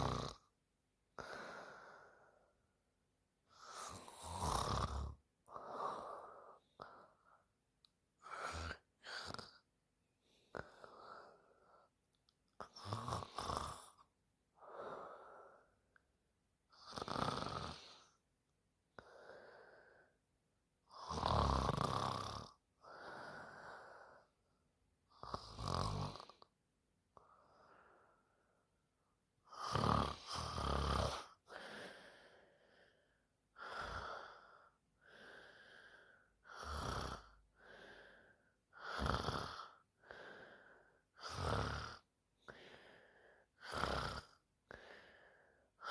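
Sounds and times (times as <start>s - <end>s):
woman snoring: 0.0s - 0.4s, 3.6s - 6.9s, 8.2s - 9.6s, 12.6s - 14.0s, 16.8s - 18.1s, 20.9s - 24.3s, 25.2s - 26.5s, 29.5s - 32.0s, 36.5s - 37.4s, 38.7s - 40.1s, 41.1s - 42.6s, 43.6s - 44.8s.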